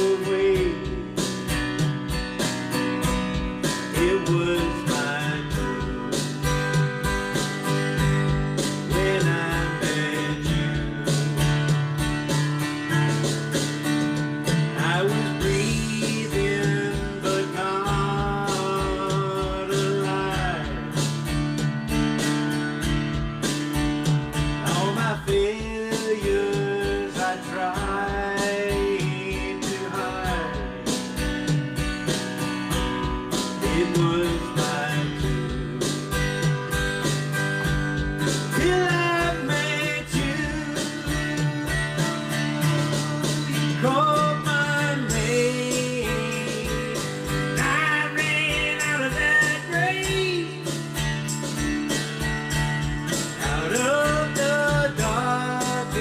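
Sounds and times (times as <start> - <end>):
man singing: 0.0 - 1.9, 3.6 - 11.7, 14.5 - 21.2, 24.6 - 31.2, 33.0 - 51.4, 53.1 - 56.0
acoustic guitar strumming: 0.0 - 56.0.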